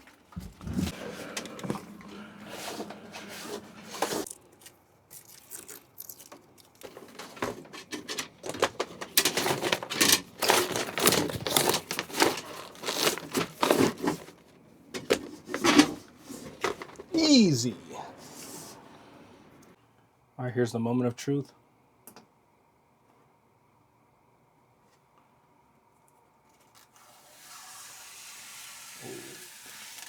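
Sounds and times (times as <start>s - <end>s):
wire rustling and scraping: 0.0s - 18.9s.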